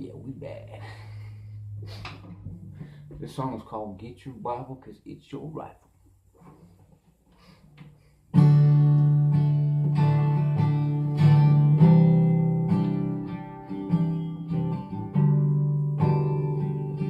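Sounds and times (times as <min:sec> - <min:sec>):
acoustic guitar strumming chords: 0:08.3 - 0:17.0.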